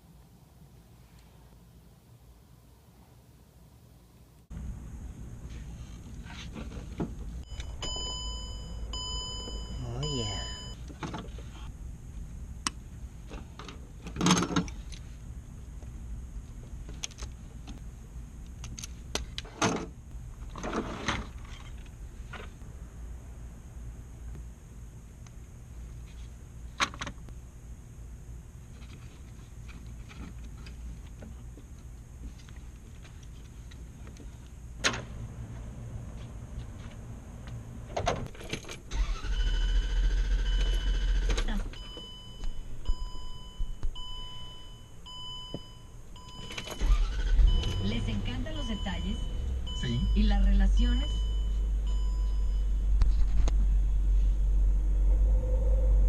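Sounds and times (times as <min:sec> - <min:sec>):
steady low hum: 0:00.0 - 0:56.0
vehicle warning chime beeping: 0:07.4 - 0:10.8, 0:39.1 - 0:53.0.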